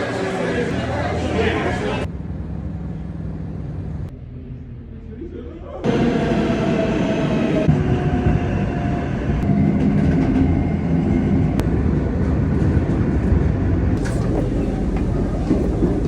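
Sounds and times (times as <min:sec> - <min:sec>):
subway train rumbling: 0:00.0 - 0:16.0.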